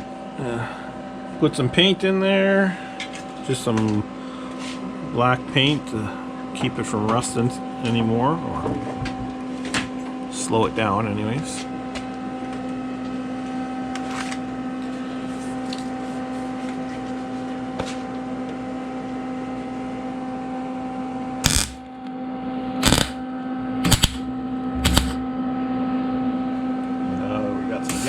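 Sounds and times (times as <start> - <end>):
electrical hum: 0.0 - 28.0
tack welding bursts: 21.4 - 21.9, 22.8 - 23.2, 23.8 - 24.2, 24.8 - 25.2.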